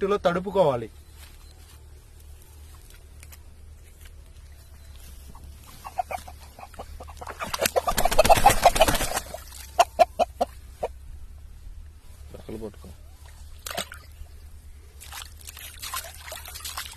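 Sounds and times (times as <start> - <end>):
rooster struggling: 5.3 - 11.0
rooster squawking: 5.5 - 11.0.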